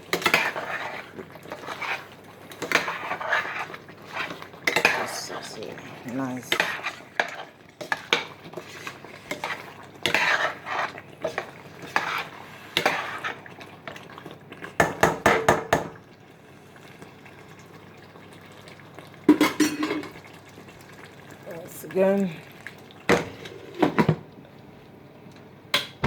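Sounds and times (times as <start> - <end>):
spoon scraping a pot: 0.1 - 5.6, 6.4 - 13.4.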